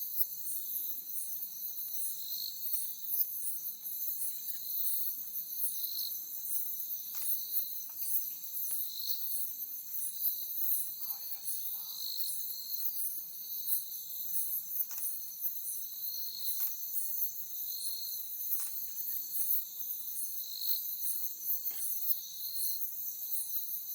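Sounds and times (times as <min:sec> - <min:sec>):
crickets trilling: 0:00.2 - 0:23.9.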